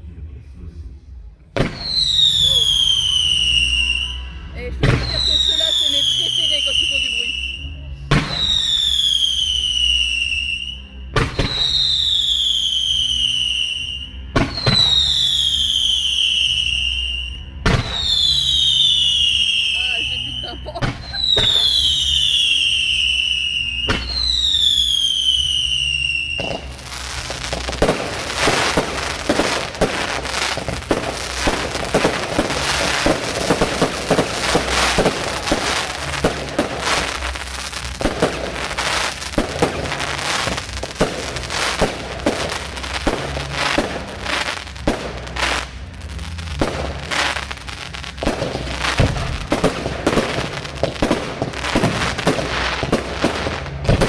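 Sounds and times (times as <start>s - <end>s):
whistling firework shells: 1.6s - 45.8s
firework bangs and crackle: 1.6s - 54.0s.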